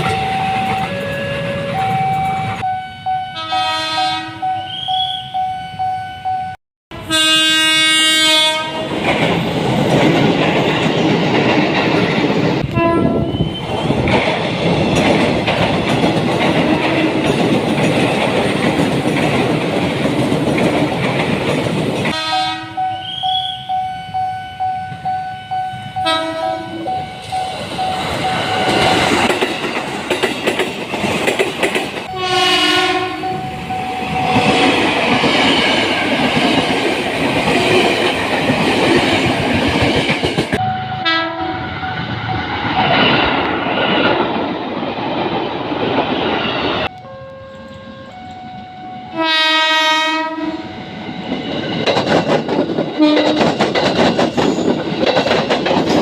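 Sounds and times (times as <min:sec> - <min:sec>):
passing train rumble and clatter: 0:00.0 - 0:56.0
train horn: 0:02.6 - 0:09.0, 0:12.7 - 0:13.5, 0:22.1 - 0:27.6, 0:32.1 - 0:34.4, 0:40.6 - 0:42.0, 0:46.9 - 0:51.4, 0:53.0 - 0:53.4.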